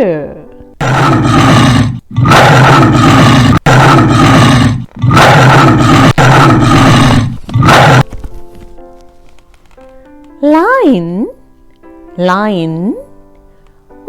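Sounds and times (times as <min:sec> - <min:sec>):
lion roaring: 0:00.8 - 0:08.1.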